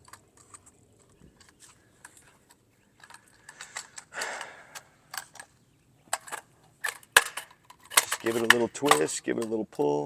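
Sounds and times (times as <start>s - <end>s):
plastic clicks and scrapes: 0.0s - 4.4s, 6.1s - 9.6s.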